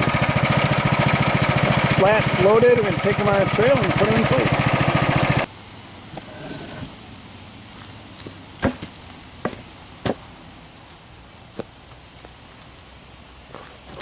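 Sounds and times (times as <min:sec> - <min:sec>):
faint steady hiss: 0:05.5 - 0:14.0.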